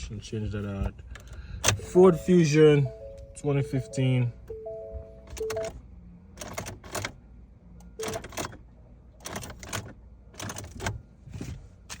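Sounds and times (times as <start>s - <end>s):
ignition clicks: 1.1s - 5.8s
car warning chime: 1.6s - 5.9s, 7.8s - 8.5s.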